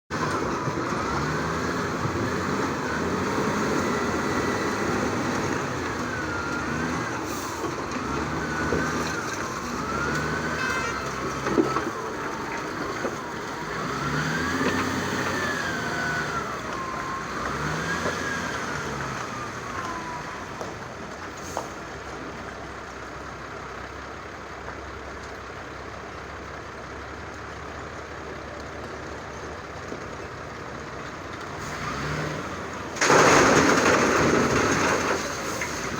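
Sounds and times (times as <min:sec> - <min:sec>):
vehicle noise: 0:00.0 - 0:35.9
siren wailing: 0:08.3 - 0:14.6.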